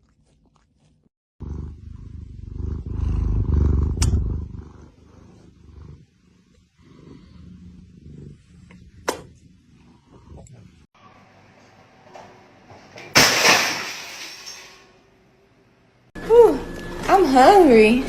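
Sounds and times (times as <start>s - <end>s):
cat purring: 0.0s - 10.9s.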